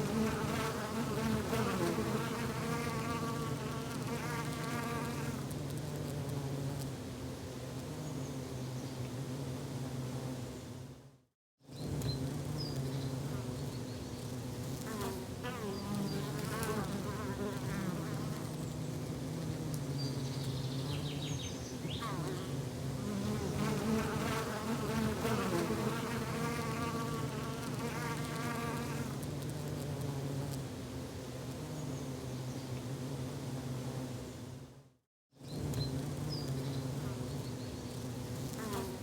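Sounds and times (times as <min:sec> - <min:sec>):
insect buzzing close by: 0:00.0 - 0:11.0, 0:11.7 - 0:34.8, 0:35.4 - 0:39.0
insects humming: 0:11.7 - 0:34.5, 0:35.4 - 0:39.0.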